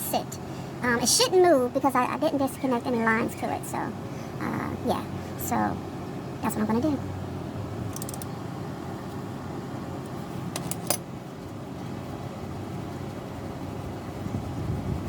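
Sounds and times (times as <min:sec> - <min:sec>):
steady low hum: 0:00.0 - 0:15.0
hand tool metallic clicks: 0:07.9 - 0:08.3.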